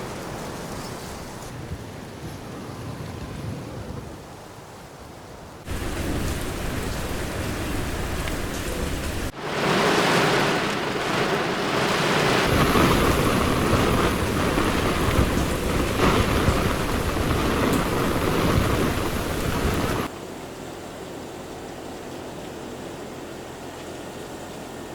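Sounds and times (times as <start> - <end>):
heavy rain rushing: 5.6 - 20.1.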